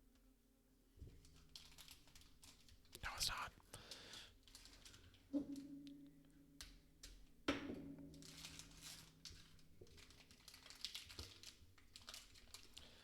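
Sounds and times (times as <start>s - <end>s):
foil wrapper crinkling and tearing: 1.3s - 5.2s, 8.2s - 13.0s.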